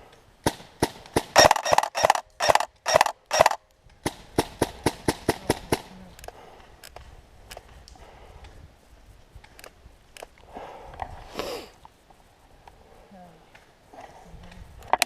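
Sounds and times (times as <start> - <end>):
airsoft gun shots: 0.4 - 5.9.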